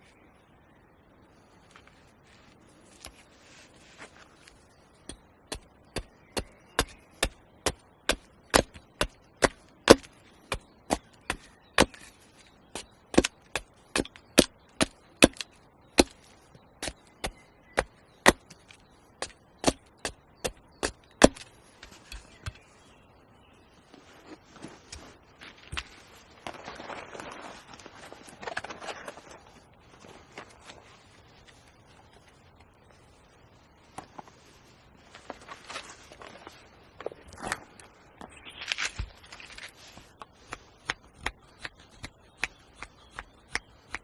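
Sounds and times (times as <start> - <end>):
wood being chopped: 5.0 - 12.1, 12.7 - 16.2, 16.8 - 21.5, 40.5 - 44.0.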